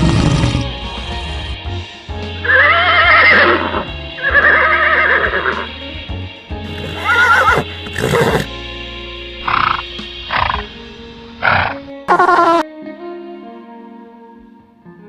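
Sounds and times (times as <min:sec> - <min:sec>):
background music: 0:00.0 - 0:15.0
horse whinnying: 0:02.5 - 0:05.6, 0:06.8 - 0:08.5, 0:11.4 - 0:12.6.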